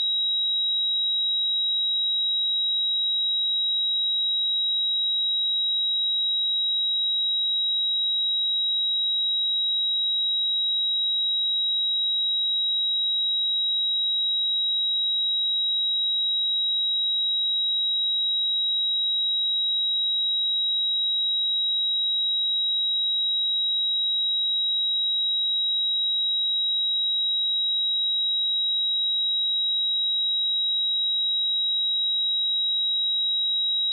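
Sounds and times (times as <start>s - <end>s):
high-pitched sine-wave test tone: 33.2s - 33.9s.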